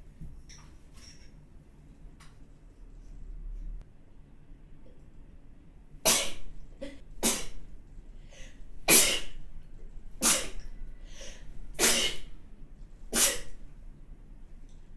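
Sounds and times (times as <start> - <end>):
person sneezing: 6.1 - 7.6, 8.9 - 9.4, 10.2 - 10.6, 11.2 - 12.3, 13.1 - 13.6
quick catch of breath: 11.0 - 11.5.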